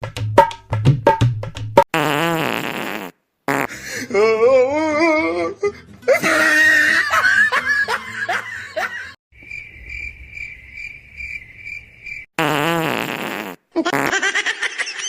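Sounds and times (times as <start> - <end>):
buzzy fart: 1.9 - 3.7, 12.4 - 14.2.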